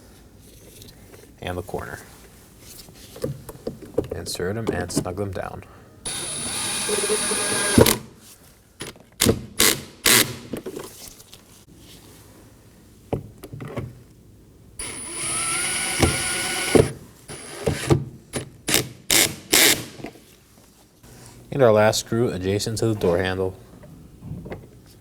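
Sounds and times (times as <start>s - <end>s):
power screwdriver running: 6.1s - 8.0s, 14.8s - 17.9s.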